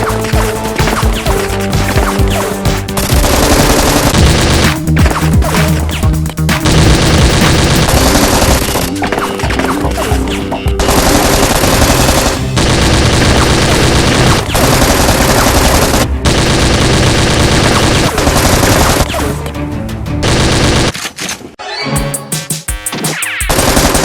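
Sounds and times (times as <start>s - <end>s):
background music: 0.0s - 20.9s, 21.6s - 24.0s
machine-gun fire: 2.9s - 5.8s, 6.5s - 8.9s, 10.8s - 19.1s, 20.2s - 21.0s, 23.5s - 24.0s.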